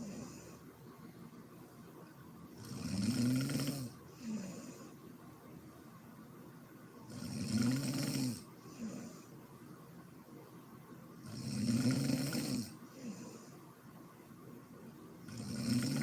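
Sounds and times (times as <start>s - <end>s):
woman snoring: 0.0s - 0.6s, 2.6s - 5.0s, 7.1s - 9.3s, 11.2s - 13.5s, 15.3s - 16.0s.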